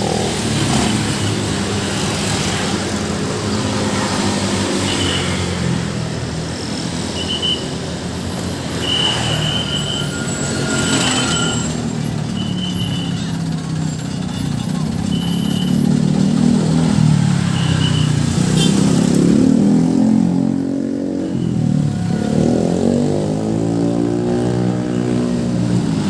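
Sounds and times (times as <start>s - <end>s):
heavy vehicles passing: 0.0s - 26.0s
high-pitched squeaks: 8.3s - 16.2s.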